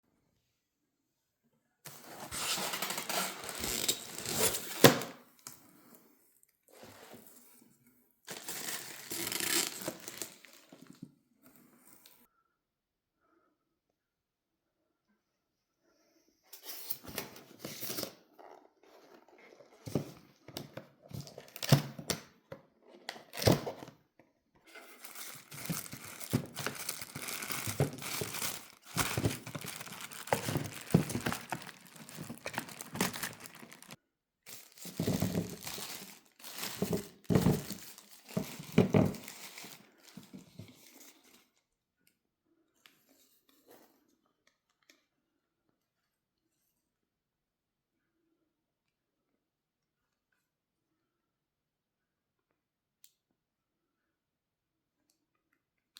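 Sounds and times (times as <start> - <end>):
wrapping tearing and crinkling: 1.9 - 5.2, 8.3 - 11.0, 24.7 - 40.4.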